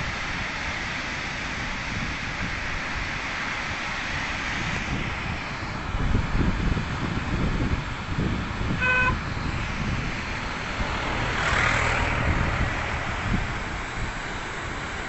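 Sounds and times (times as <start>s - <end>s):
road traffic rushing rumble: 0.0s - 15.0s
vehicle horn toot: 8.8s - 9.2s.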